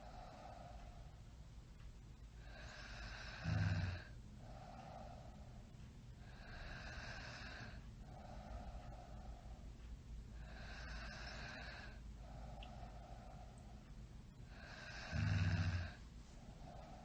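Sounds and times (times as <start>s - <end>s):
person snoring: 2.5s - 4.1s, 10.5s - 12.0s, 14.5s - 16.0s.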